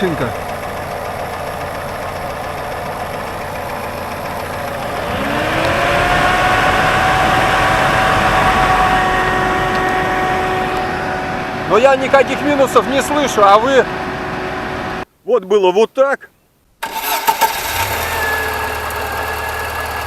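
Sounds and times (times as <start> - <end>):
car engine running: 0.0 - 15.0, 17.6 - 20.0
rising whine: 1.2 - 15.0.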